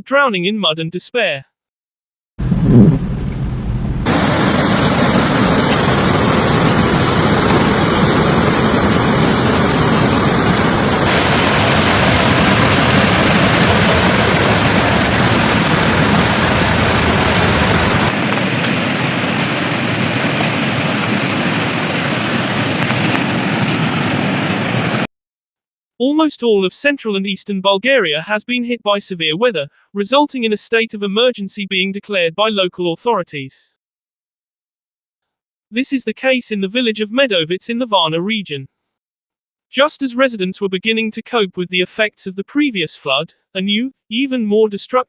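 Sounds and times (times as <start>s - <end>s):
floodwater rushing: 2.4s - 4.8s, 16.9s - 25.1s.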